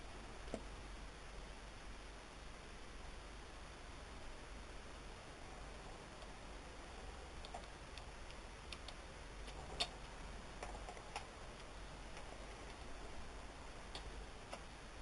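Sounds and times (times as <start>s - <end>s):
faint hiss and hum: 0.0s - 15.0s.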